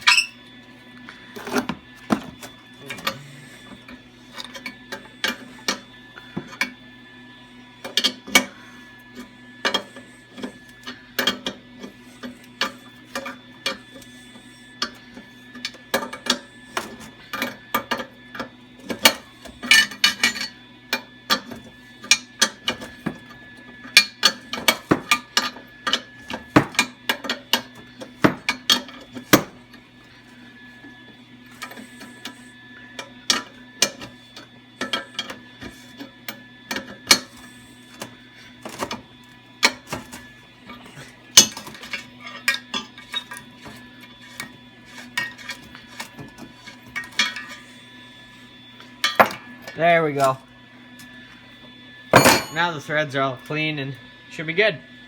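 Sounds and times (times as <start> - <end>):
hand tools clinking on metal: 52.2 - 52.8.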